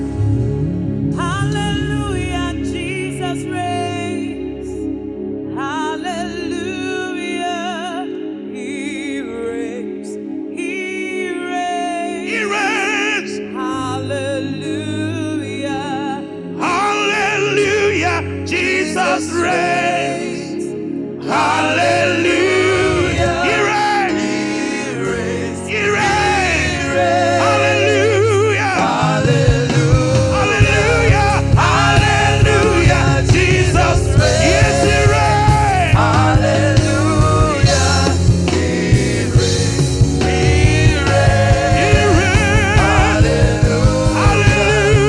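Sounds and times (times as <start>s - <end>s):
heavy bass: 0.0s - 3.6s, 22.1s - 24.3s, 25.4s - 45.0s
person singing with vibrato: 5.6s - 45.0s
gospel band playing: 16.6s - 45.0s
steady drum beat: 29.0s - 45.0s.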